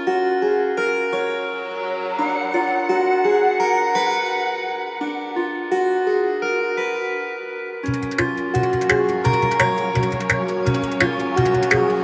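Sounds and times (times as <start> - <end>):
plucked string melody: 0.0 - 12.0
drum beat: 7.9 - 12.0.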